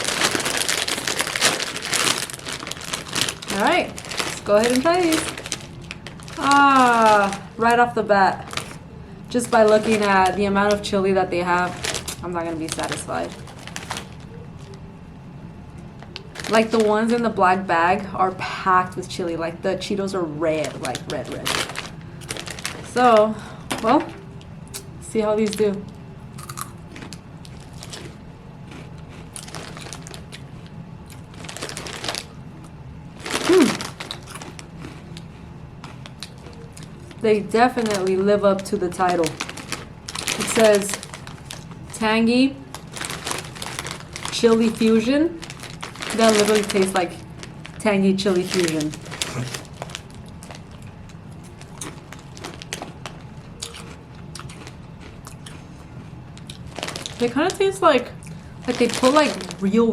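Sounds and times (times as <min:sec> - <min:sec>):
crunchy snack chewing: 0:00.0 - 0:07.5, 0:08.4 - 0:08.8, 0:26.3 - 0:37.2, 0:48.4 - 0:57.2
snack bag crinkling: 0:00.0 - 0:14.8, 0:15.9 - 0:17.3, 0:20.6 - 0:59.9
person humming: 0:33.5 - 0:33.8.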